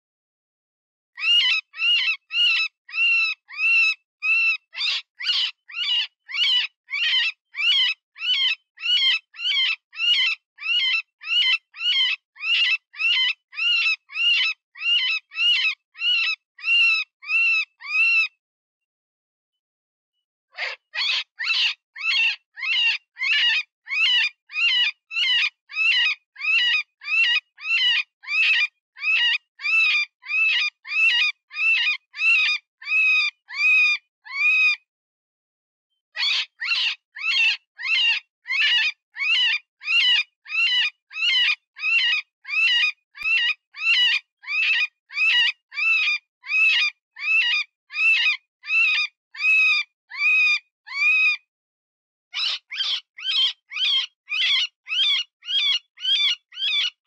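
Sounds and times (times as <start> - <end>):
rabbit squealing cries: 20.6 - 34.8, 36.2 - 51.4.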